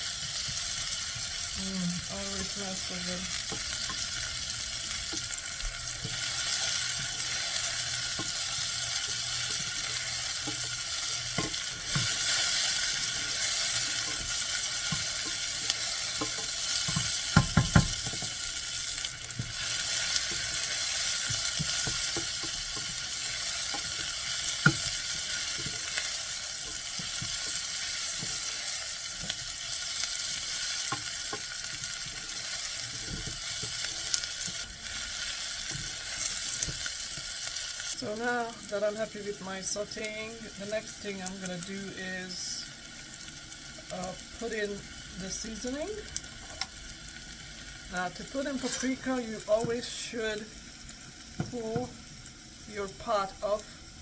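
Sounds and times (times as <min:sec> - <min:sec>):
vegetables sizzling in oil: 0:00.0 - 0:54.0
utensil knocking against pot: 0:16.9 - 0:18.1.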